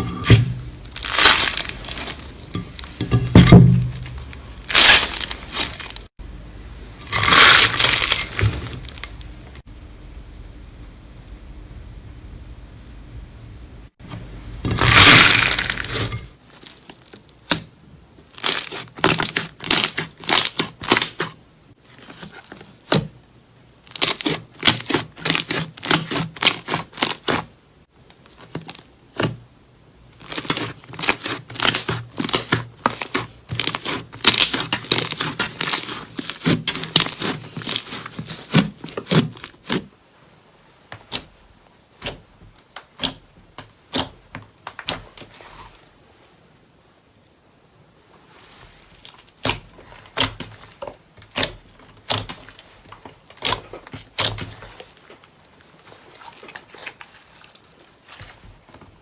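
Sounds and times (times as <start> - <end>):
slime squelching: 0.0 - 6.1, 7.0 - 9.4, 14.6 - 23.1, 23.8 - 27.5, 30.2 - 39.9, 48.3 - 59.0.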